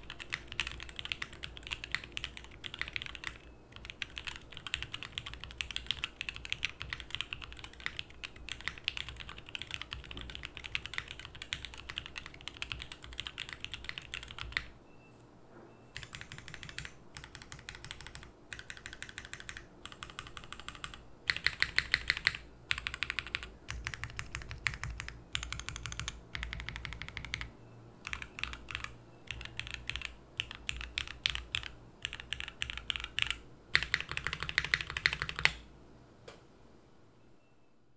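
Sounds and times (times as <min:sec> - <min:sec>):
mechanical keyboard typing: 0:00.0 - 0:14.7, 0:16.0 - 0:35.6.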